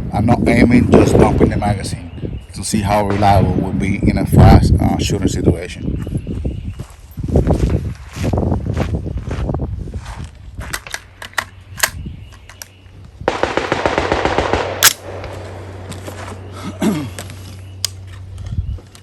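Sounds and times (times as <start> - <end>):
rifle gunshots: 3.1 - 3.9, 13.3 - 16.0.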